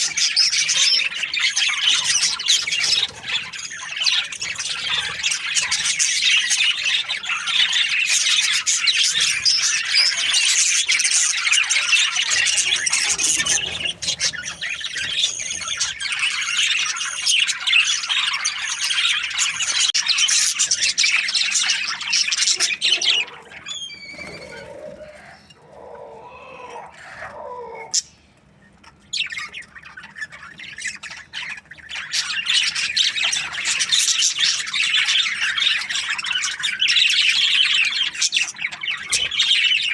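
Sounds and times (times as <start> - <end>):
budgerigars chattering and squawking: 0.0 - 39.9.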